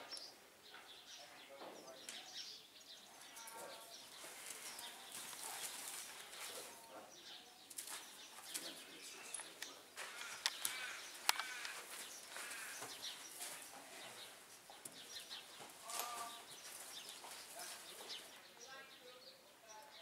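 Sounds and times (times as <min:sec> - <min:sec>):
faint birds chirping: 0:00.0 - 0:20.0
rustles: 0:03.2 - 0:06.9, 0:07.6 - 0:18.6
sharp clicks: 0:09.6 - 0:11.8.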